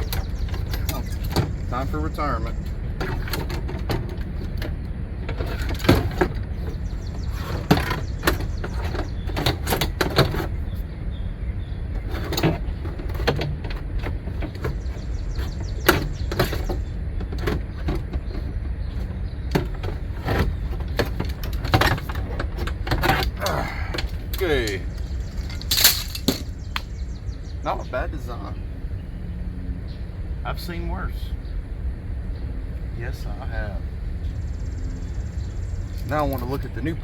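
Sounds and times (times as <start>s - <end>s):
clunks knocks and rattles: 0.0s - 28.4s
steady low hum: 0.0s - 37.0s.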